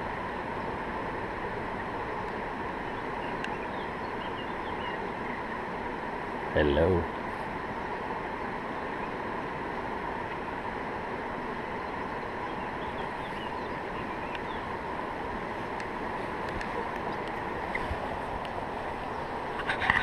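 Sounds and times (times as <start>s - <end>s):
river water rushing: 0.0s - 20.0s.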